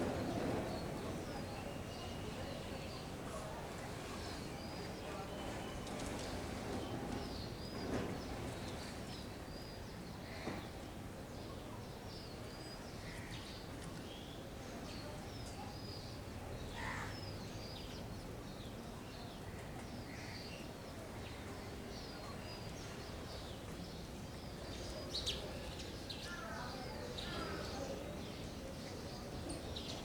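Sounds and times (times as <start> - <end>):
outdoor background noise: 0.0 - 30.0
sparrows chirping: 20.2 - 30.0.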